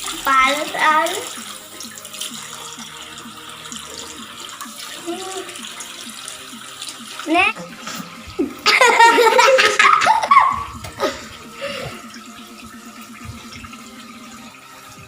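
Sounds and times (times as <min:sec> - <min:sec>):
tap water running into basin: 0:00.0 - 0:15.0
loud laughter: 0:08.6 - 0:11.2.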